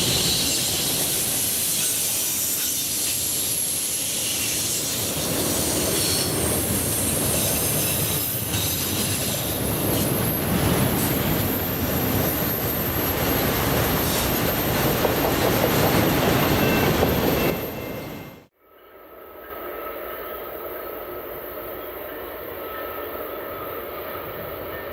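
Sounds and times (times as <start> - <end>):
wheel squeal: 0.0 - 18.4
train wheels rumbling on rail: 0.0 - 18.5.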